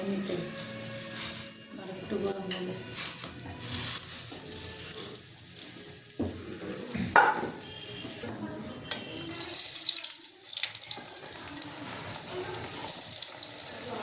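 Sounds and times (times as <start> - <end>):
food sizzling in hot oil: 0.0 - 8.2, 9.1 - 14.0
utensil knocking: 7.0 - 7.6.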